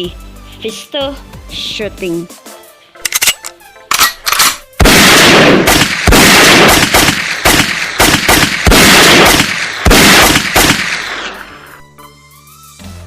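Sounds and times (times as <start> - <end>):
pistol gunshots with echo: 4.5 - 11.5.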